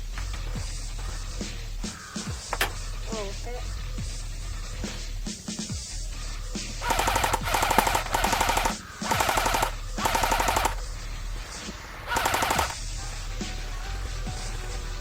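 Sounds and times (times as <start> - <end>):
airsoft gun full-auto bursts: 6.8 - 11.0, 12.1 - 12.8.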